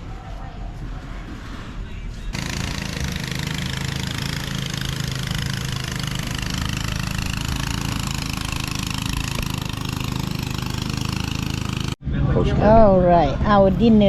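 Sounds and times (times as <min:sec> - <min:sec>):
engine running: 0:02.3 - 0:12.0.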